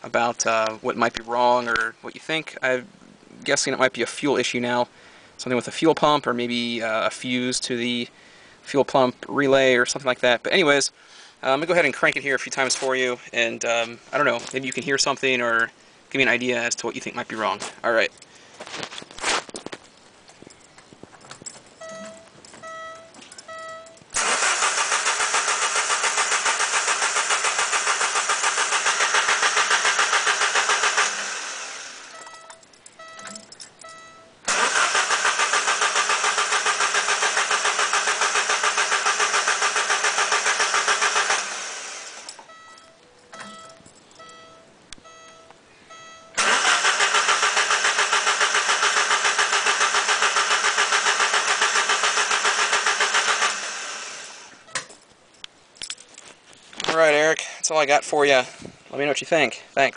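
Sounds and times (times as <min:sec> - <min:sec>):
short beeps: 0:21.8 - 0:24.0, 0:32.1 - 0:34.4, 0:42.4 - 0:46.4
car engine cranking on starter: 0:24.1 - 0:32.2, 0:34.5 - 0:42.4, 0:46.4 - 0:54.6.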